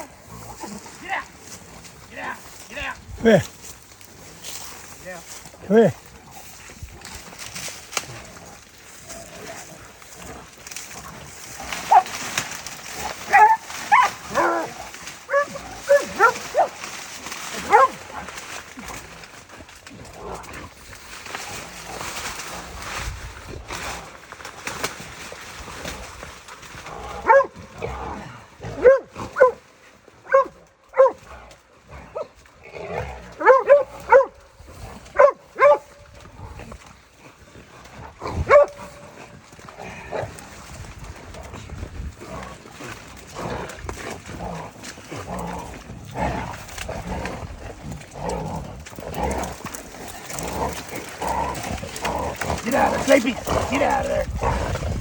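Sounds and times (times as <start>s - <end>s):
rustling: 0.0s - 27.4s, 32.6s - 55.0s
dog barking: 11.9s - 12.1s, 13.3s - 14.7s, 15.3s - 16.8s, 17.7s - 18.0s, 27.2s - 27.6s, 28.8s - 29.6s, 30.2s - 31.2s, 33.4s - 34.4s, 35.2s - 35.9s, 38.5s - 39.0s.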